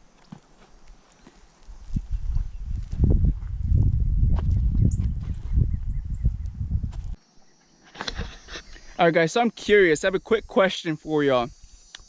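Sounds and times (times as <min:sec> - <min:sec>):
footsteps on loose soil: 0:00.0 - 0:07.2.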